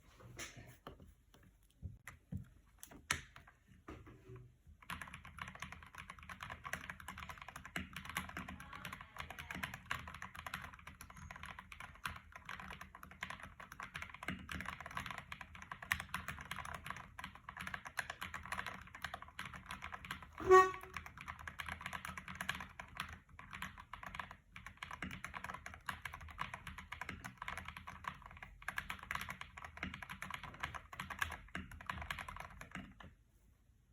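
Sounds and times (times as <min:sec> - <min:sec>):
typing on computer keyboard: 0:04.7 - 0:33.2
brief loud tone: 0:20.4 - 0:21.0.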